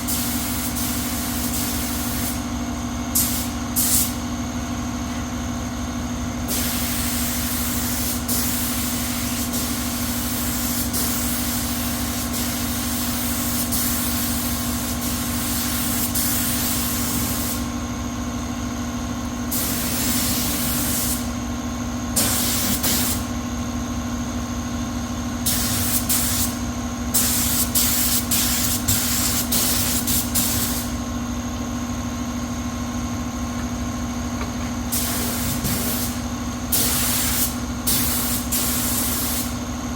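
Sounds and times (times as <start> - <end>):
compressed air hissing bursts: 0.0 - 2.5, 3.1 - 4.2, 6.5 - 17.7, 19.5 - 21.4, 22.2 - 23.3, 25.4 - 31.0, 34.9 - 39.6
steady machine hum: 0.0 - 39.9.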